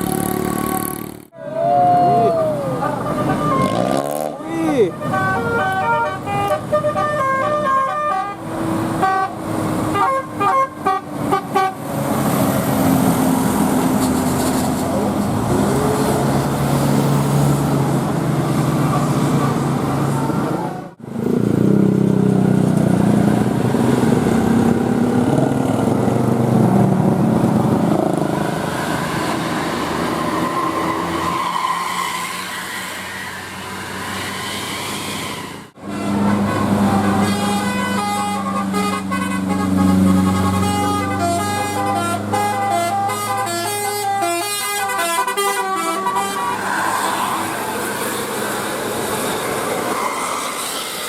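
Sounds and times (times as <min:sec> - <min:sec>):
multi-tone bus air horns: 0:02.8 - 0:12.0, 0:35.4 - 0:46.8.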